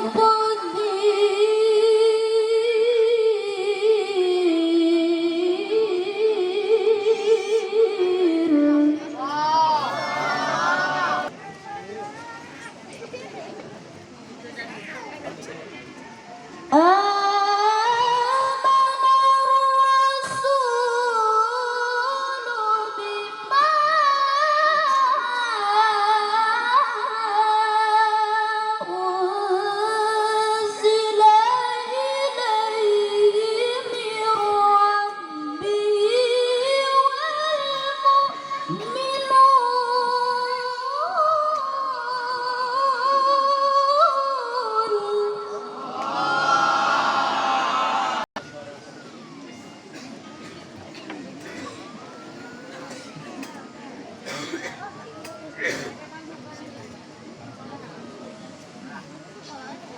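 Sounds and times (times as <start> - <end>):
woman singing: 0.0 - 9.2, 16.7 - 45.8.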